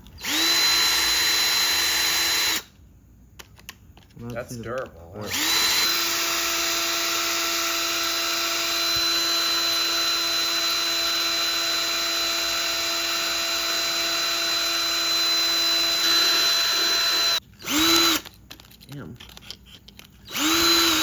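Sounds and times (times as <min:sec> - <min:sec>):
cordless drill grinding into phone: 0:00.2 - 0:02.7, 0:05.2 - 0:18.6, 0:19.2 - 0:21.0
drill motor whine: 0:00.2 - 0:02.7, 0:05.2 - 0:18.3, 0:20.3 - 0:21.0.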